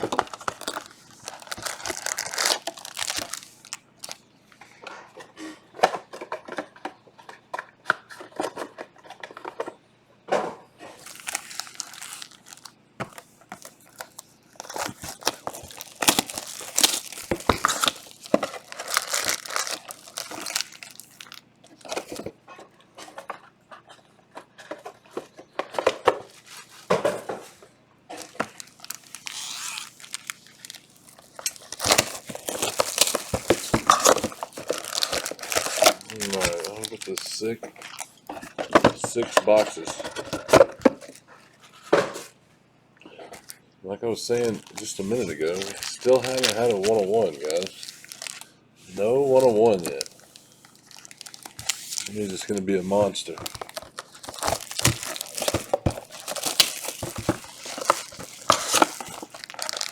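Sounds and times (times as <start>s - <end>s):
plastic wrap crackling and ripping: 0.0s - 4.3s, 11.0s - 22.3s, 26.3s - 27.0s, 28.1s - 41.8s, 44.2s - 59.9s.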